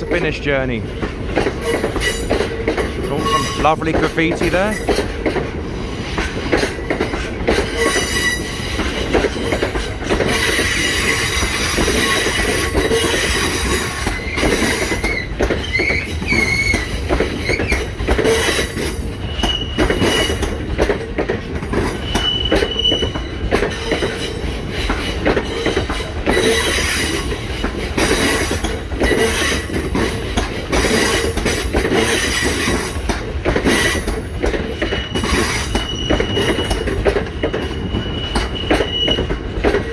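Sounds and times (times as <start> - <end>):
freight train rumbling: 0.0 - 39.9
wheels clattering over rail joints: 0.0 - 39.9
high wheel squeals: 3.0 - 3.8, 7.6 - 9.6, 10.3 - 20.6, 21.8 - 24.4, 33.8 - 39.8.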